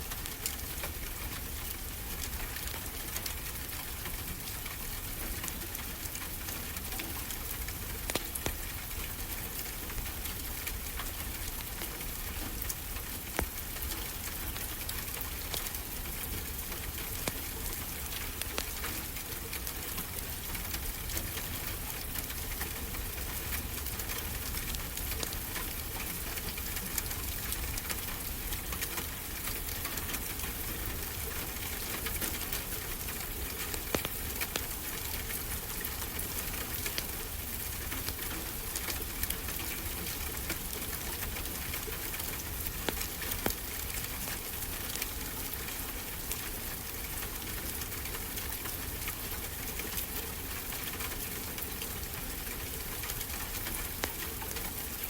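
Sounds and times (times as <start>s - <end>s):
wood fire crackling and popping: 7.2s - 8.9s, 9.5s - 29.5s, 30.4s - 45.2s.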